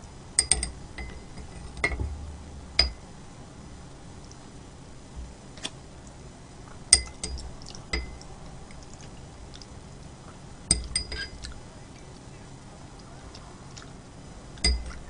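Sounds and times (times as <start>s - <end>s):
utensils clinking against a dish: 0.4s - 2.0s, 6.9s - 8.2s, 10.7s - 11.6s, 14.6s - 15.0s.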